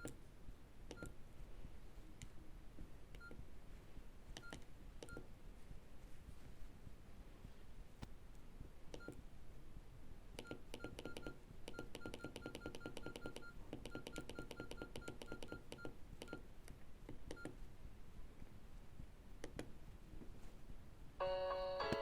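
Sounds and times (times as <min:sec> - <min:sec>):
phone keypad clicks: 0:00.9 - 0:01.2, 0:10.4 - 0:16.4, 0:17.1 - 0:17.6
key tone beeps: 0:10.4 - 0:16.4.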